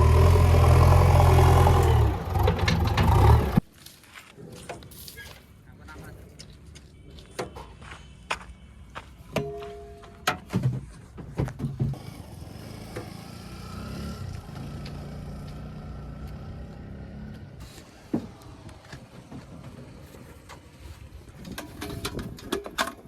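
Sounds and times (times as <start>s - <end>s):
diesel engine running: 0.0s - 3.6s.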